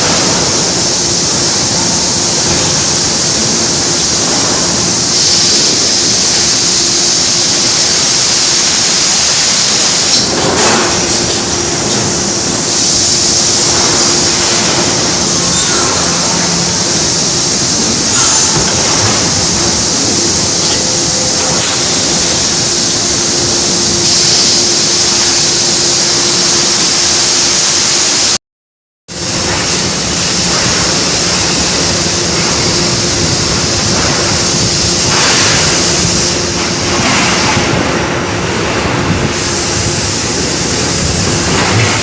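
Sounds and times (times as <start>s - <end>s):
loud machine hiss: 0.0s - 28.4s, 29.1s - 42.0s.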